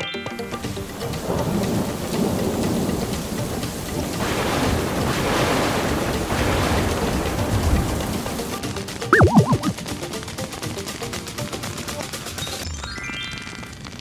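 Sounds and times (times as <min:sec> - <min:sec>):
rain falling: 0:00.9 - 0:08.5.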